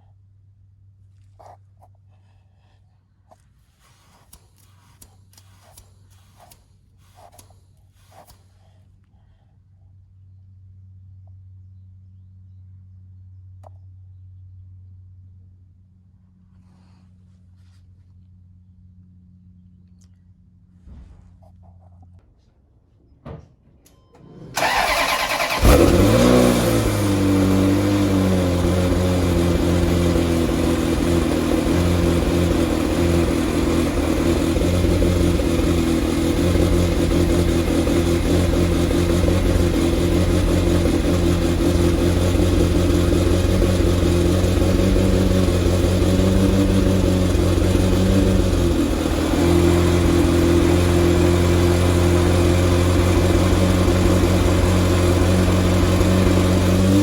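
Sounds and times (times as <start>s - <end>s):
car engine revving and idling: 24.2s - 57.0s
starter cranking engine: 24.2s - 57.0s.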